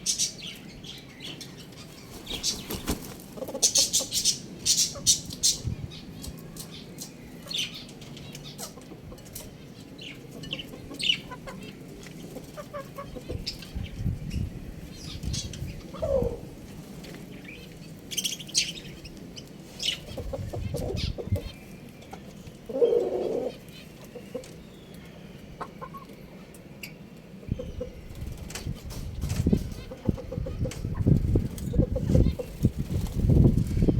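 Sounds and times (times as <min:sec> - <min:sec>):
chickens chirping: 0:00.0 - 0:33.9
chicken squawk: 0:25.6 - 0:26.1.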